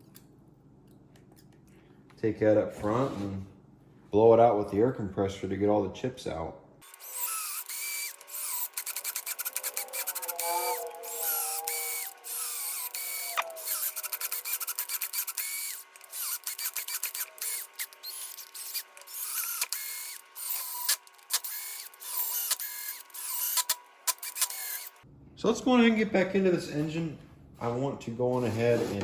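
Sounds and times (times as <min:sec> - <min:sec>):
short squeaks: 0:06.8 - 0:25.0
small metal clicks: 0:06.8 - 0:25.0.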